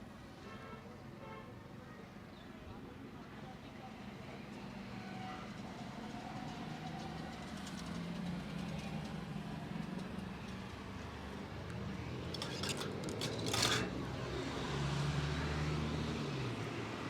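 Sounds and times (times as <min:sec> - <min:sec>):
road traffic passing by: 0:08.1 - 0:17.0.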